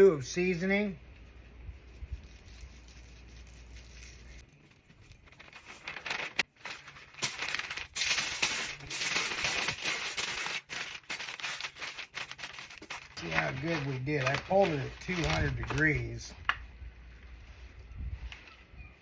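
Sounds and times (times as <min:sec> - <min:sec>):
wrapping rustling and crackling: 0:03.7 - 0:16.6.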